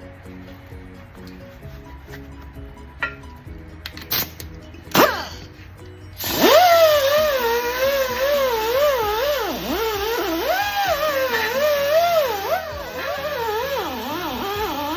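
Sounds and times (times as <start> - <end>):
background music: 0.0 - 14.9
power drill running under load: 6.2 - 14.9.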